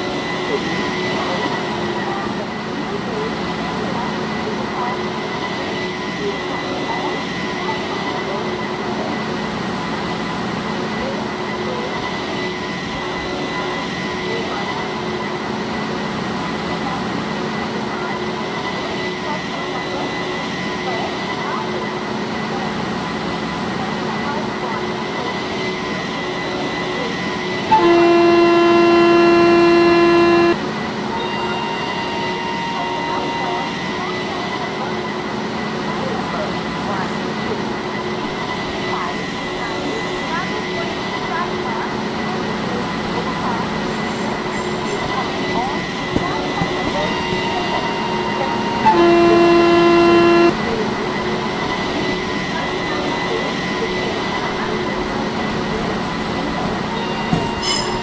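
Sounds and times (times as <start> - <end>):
railway station background noise: 0.0 - 58.0
locomotive horn blast: 27.7 - 30.6, 46.1 - 50.6.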